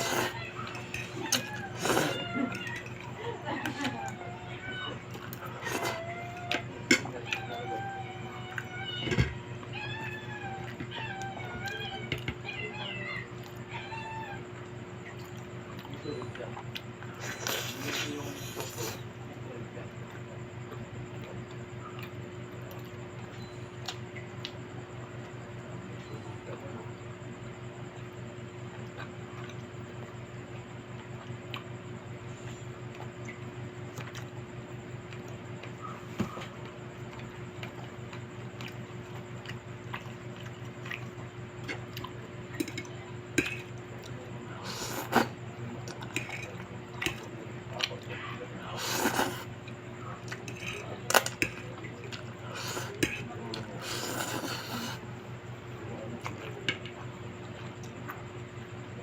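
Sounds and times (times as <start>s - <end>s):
wet chewing and slurping: 0.0s - 0.4s, 1.0s - 2.2s, 43.4s - 48.0s, 48.8s - 55.0s
steady low hum: 0.0s - 59.0s.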